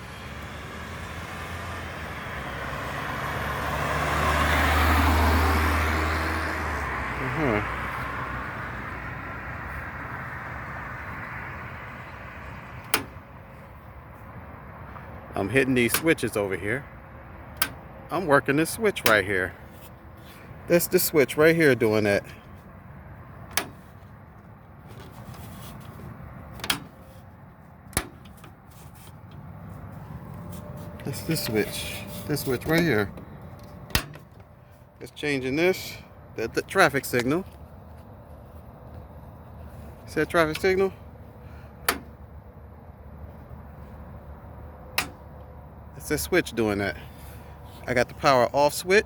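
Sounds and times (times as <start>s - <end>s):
vehicle driving past: 0.0s - 12.8s.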